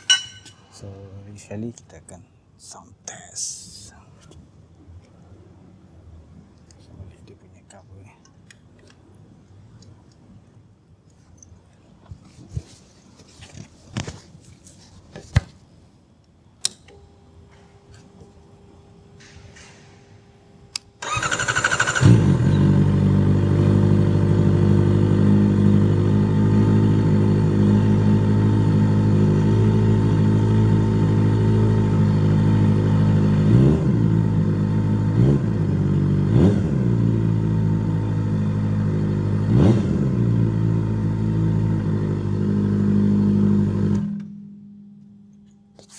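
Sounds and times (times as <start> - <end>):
motorcycle starter cranking: 21.0 - 22.7
motorcycle engine idling: 21.0 - 33.4.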